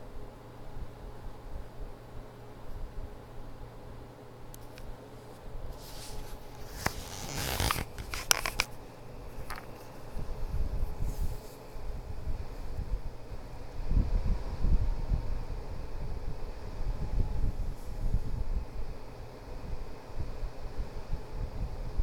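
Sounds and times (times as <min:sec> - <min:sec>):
rustling: 0:04.8 - 0:08.8.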